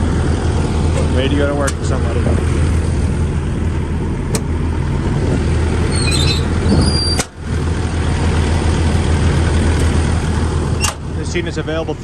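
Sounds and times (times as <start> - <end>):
diesel engine idling: 0.0 - 12.0
high-pitched squeaks: 5.9 - 7.3.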